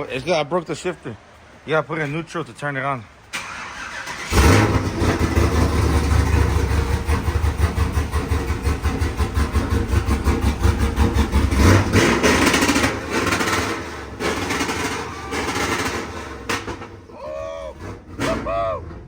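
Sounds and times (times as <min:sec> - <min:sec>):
pickup truck engine idling: 0:03.2 - 0:19.0.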